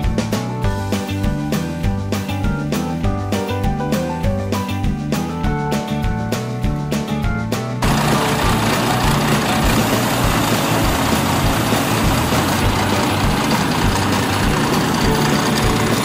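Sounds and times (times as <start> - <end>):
combine harvester running: 7.8 - 16.0.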